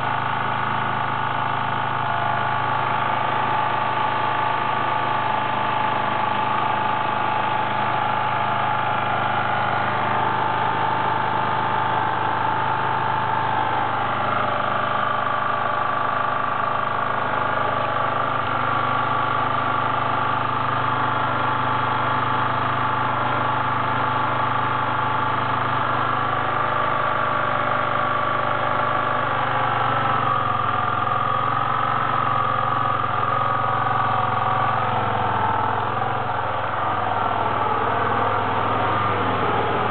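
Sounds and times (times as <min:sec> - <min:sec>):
scooter engine running: 0:00.0 - 0:39.9.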